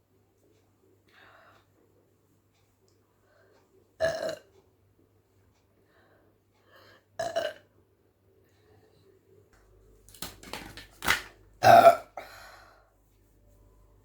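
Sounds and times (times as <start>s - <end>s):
woman burping: 4.0s - 4.4s, 7.2s - 7.6s, 11.6s - 12.3s.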